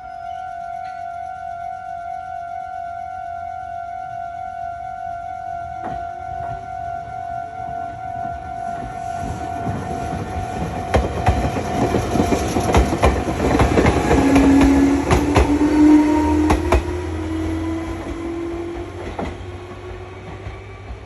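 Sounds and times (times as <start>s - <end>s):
train motor whine: 0.0s - 21.0s
train wheels clacking: 8.8s - 21.0s.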